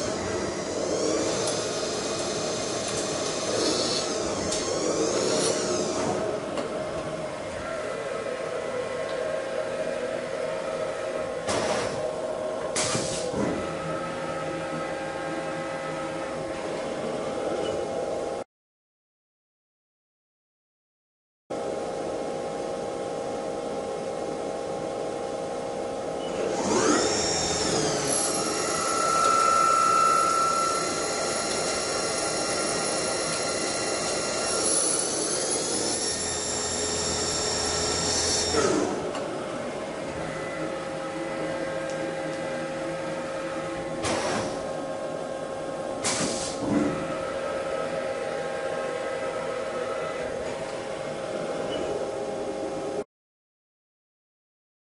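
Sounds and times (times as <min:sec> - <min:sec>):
machine humming: 0:00.0 - 0:12.8, 0:25.5 - 0:46.0
spindle whine: 0:26.2 - 0:46.0.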